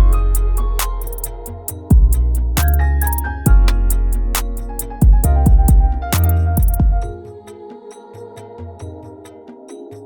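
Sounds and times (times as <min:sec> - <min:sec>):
electronic beat music: 0:00.0 - 0:07.3.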